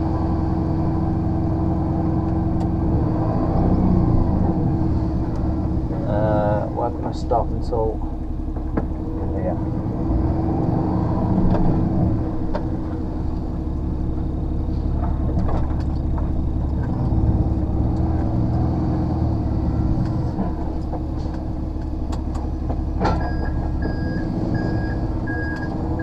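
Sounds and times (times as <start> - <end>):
lorry diesel engine running: 0.0 - 26.0
reversing alarm beeping: 23.2 - 26.0.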